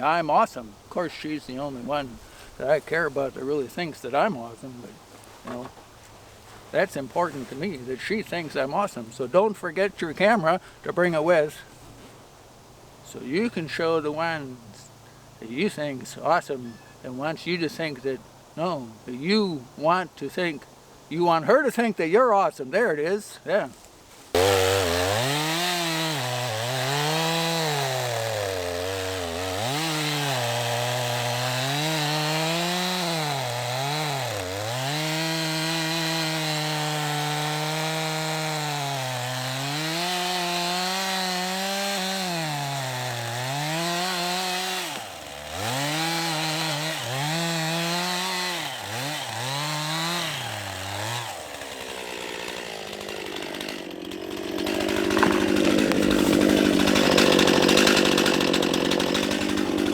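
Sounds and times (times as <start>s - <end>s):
chainsaw cutting log: 0.0s - 9.2s, 24.3s - 59.9s.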